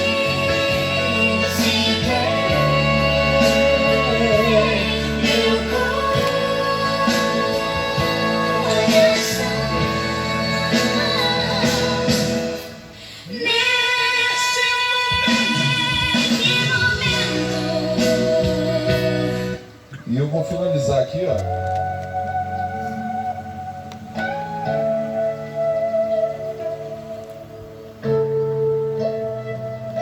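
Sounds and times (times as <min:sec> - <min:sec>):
person singing a song: 0:00.0 - 0:19.7
musical accompaniment: 0:00.0 - 0:30.0.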